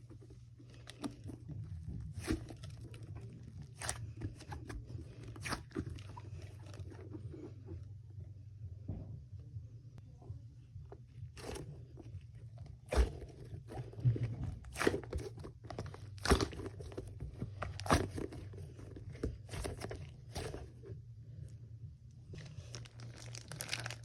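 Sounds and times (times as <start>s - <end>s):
packaging crinkling: 22.4s - 24.0s.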